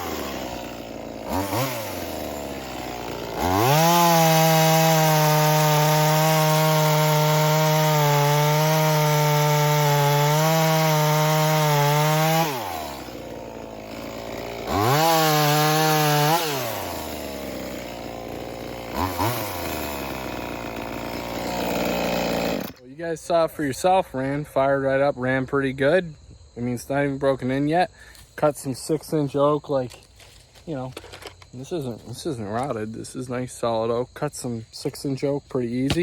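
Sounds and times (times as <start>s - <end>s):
chainsaw revving and idling: 0.0s - 22.9s.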